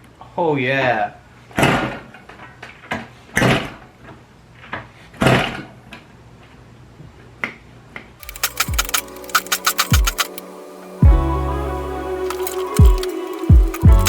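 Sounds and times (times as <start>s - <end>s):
motorcycle kick-start clanking: 8.2s - 10.4s, 12.2s - 14.0s.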